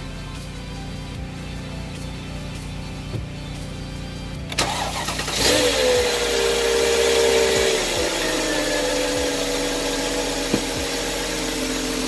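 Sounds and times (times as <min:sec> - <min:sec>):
car engine starting and idling: 0:00.0 - 0:12.0
ignition click: 0:04.5 - 0:05.6.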